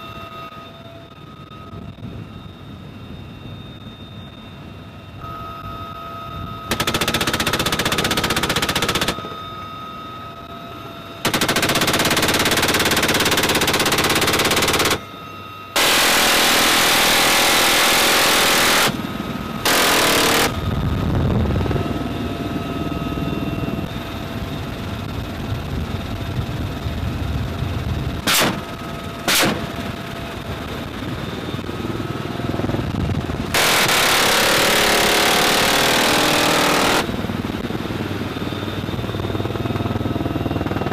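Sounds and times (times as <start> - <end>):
helicopter turbine whine: 0.0 - 40.9
machine gun firing bursts: 6.7 - 9.2, 11.2 - 15.0, 15.8 - 19.0, 19.6 - 20.6, 33.5 - 37.2.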